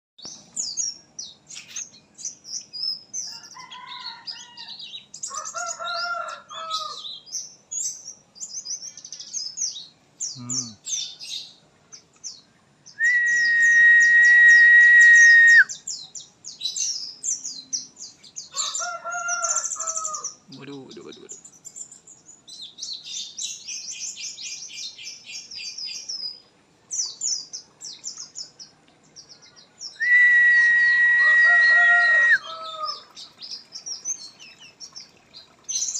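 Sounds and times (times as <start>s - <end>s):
birds twittering: 0.2s - 35.9s
rooster crowing: 3.3s - 7.0s, 18.5s - 20.4s, 30.0s - 33.1s.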